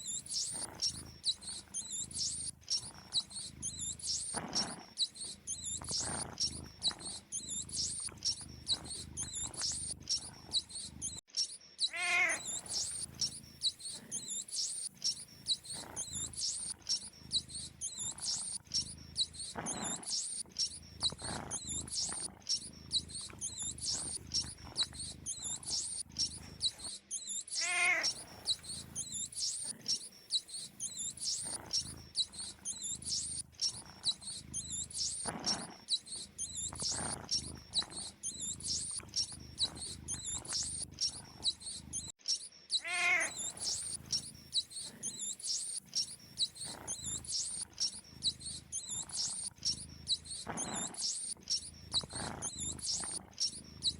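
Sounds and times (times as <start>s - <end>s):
mouse squeaks: 0.0s - 53.9s
cat meowing: 11.9s - 13.1s, 27.6s - 29.0s, 42.8s - 43.8s.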